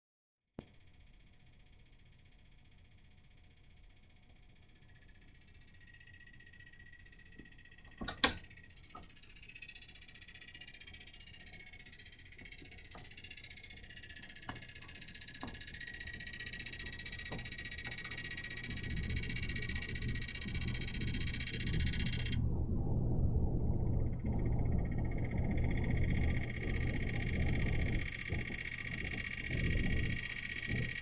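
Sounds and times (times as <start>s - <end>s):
hvac unit rattling: 6.7s - 22.4s, 23.7s - 31.0s
low rumble: 22.0s - 31.0s
faint ticks: 25.4s - 31.0s.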